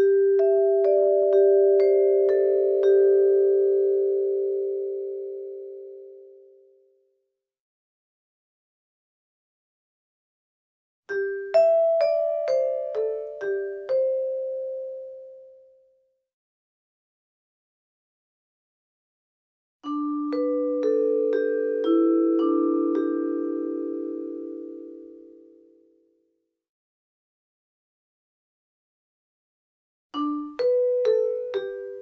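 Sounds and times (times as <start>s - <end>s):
vibraphone playing: 0.0s - 6.4s, 11.1s - 15.6s, 19.8s - 25.7s, 30.2s - 32.0s.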